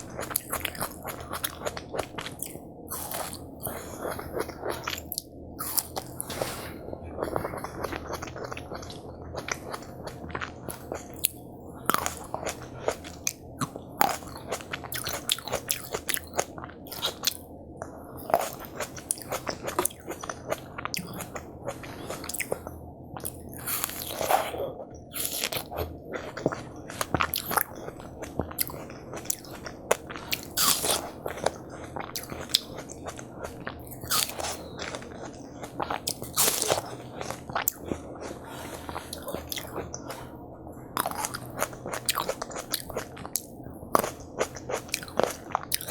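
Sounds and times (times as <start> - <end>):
chewing watermelon crunches: 0.0 - 6.6, 7.2 - 17.5, 18.2 - 40.3, 41.0 - 45.9.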